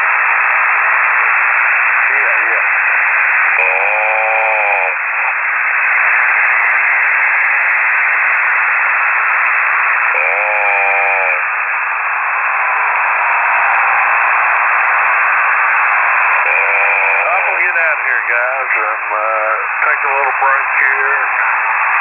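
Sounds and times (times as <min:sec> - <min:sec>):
radio static hiss: 0:00.0 - 0:22.0
person snoring over radio: 0:01.9 - 0:02.8, 0:03.5 - 0:05.5, 0:10.1 - 0:11.6, 0:16.3 - 0:21.5.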